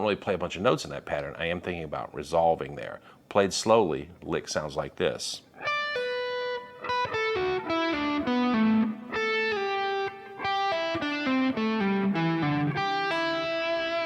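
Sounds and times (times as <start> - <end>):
electric guitar lick: 5.6 - 14.0.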